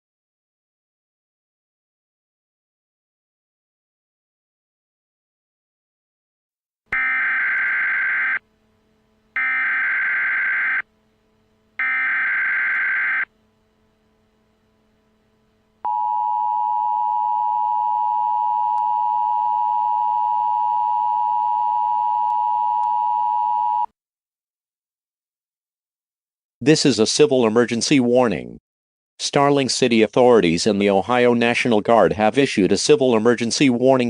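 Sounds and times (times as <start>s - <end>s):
two-tone alarm: 6.9s - 8.5s, 9.4s - 10.9s, 11.8s - 13.4s, 15.8s - 23.9s.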